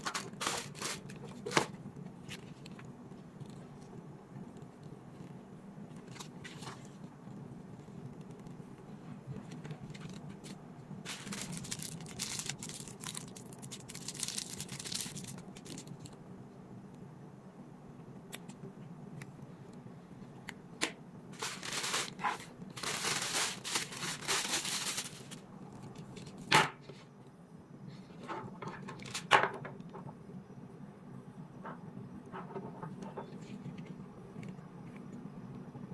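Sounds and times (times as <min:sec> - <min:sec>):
packaging crinkling and rustling: 0:00.0 - 0:02.7, 0:09.4 - 0:16.2, 0:21.3 - 0:26.4.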